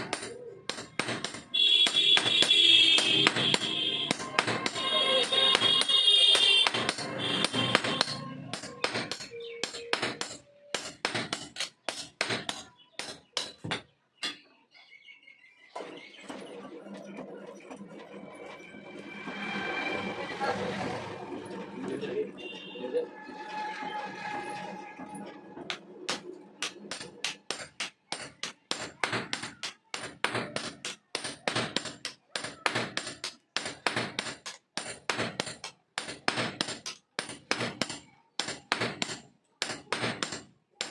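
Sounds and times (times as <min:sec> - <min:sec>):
hammer striking metal: 0:00.0 - 0:14.4, 0:25.6 - 0:40.9.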